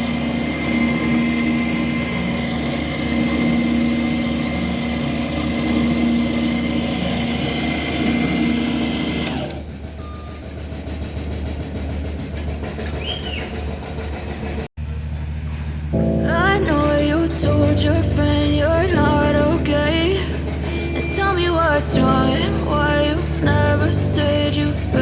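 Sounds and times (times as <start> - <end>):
lathe motor hum and whine: 0.0 - 9.6.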